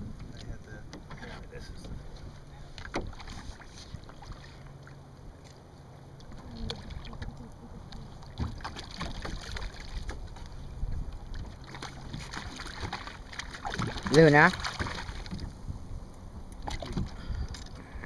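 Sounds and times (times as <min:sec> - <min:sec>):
knocks and clicks in a boat: 0:00.0 - 0:05.6, 0:06.2 - 0:15.5, 0:16.5 - 0:17.8
low steady hum: 0:00.0 - 0:18.0
wind on the microphone: 0:10.6 - 0:11.6.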